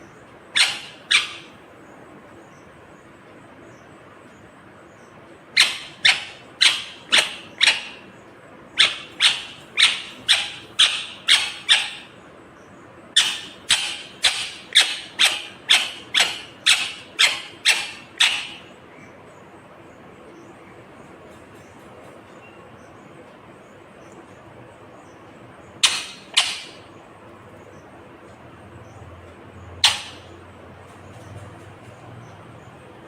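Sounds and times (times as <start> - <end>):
parrot shrill calls: 0.5 - 1.6, 5.5 - 8.1, 8.8 - 12.2, 13.2 - 18.7, 25.8 - 26.9, 29.8 - 30.3.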